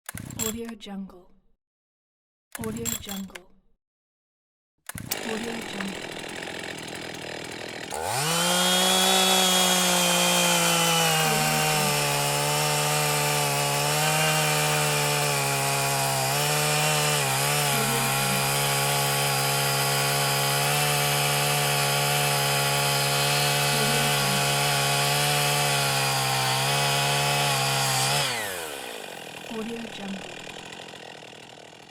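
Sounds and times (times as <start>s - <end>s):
chainsaw cutting wood: 4.9s - 31.9s.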